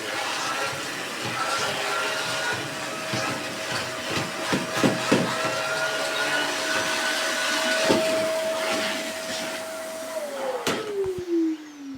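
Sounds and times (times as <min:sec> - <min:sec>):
vacuum cleaner running: 0:00.0 - 0:11.9.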